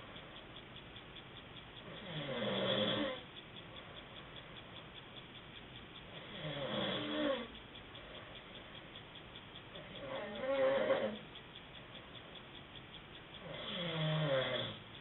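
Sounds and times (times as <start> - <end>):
man snoring: 2.0 - 3.2, 6.3 - 7.5, 13.5 - 14.8.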